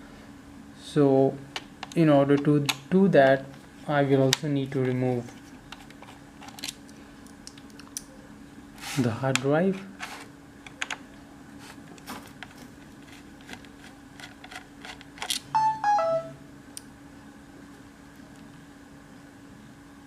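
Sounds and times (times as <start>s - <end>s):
short electronic beeps: 15.6s - 16.4s.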